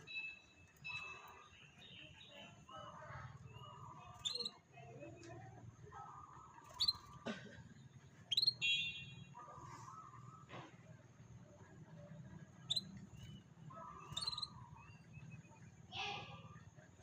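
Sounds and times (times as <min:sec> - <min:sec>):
canaries chirping: 0:00.0 - 0:04.6, 0:06.4 - 0:07.2, 0:08.2 - 0:09.6, 0:12.5 - 0:15.6.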